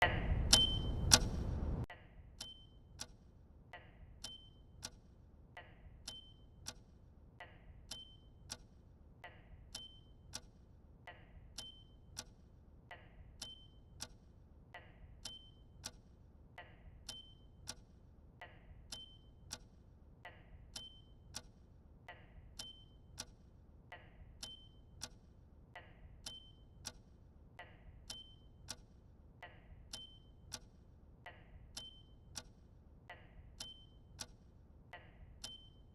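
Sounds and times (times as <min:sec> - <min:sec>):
clock ticking: 0:00.5 - 0:01.4, 0:33.4 - 0:34.4, 0:35.2 - 0:35.9.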